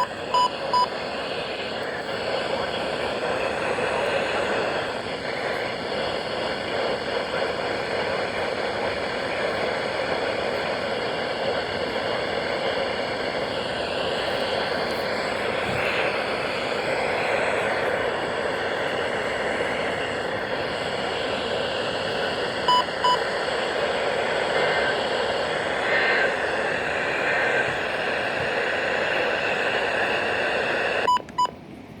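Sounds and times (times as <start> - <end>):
short electronic beeps: 0.0 - 0.9, 22.7 - 23.2
radio static hiss: 0.0 - 31.5.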